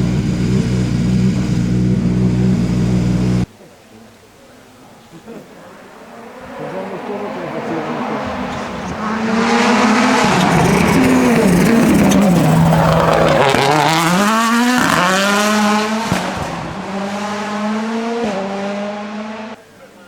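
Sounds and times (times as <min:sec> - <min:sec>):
rally car engine revving: 0:00.0 - 0:03.5, 0:05.6 - 0:19.6
tyres squealing: 0:05.4 - 0:14.2
sharp crack: 0:16.0 - 0:16.8.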